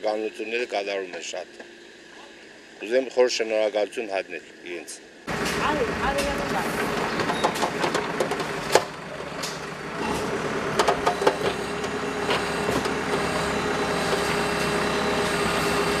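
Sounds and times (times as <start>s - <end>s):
heavy vehicle engine running: 5.2s - 16.0s.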